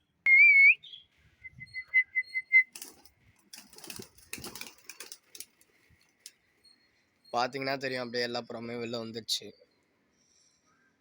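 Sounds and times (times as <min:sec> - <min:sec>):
pigeon wings flapping: 0:02.6 - 0:06.3.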